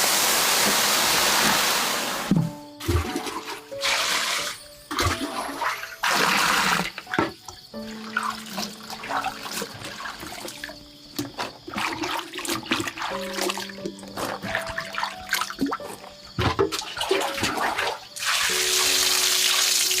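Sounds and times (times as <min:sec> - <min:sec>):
water rushing and splashing: 0:00.0 - 0:02.3, 0:11.7 - 0:20.0.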